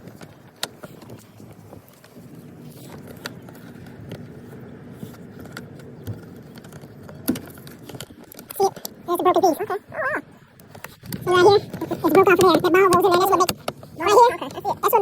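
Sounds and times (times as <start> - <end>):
small clicks and rattles of parts: 0.0 - 9.3.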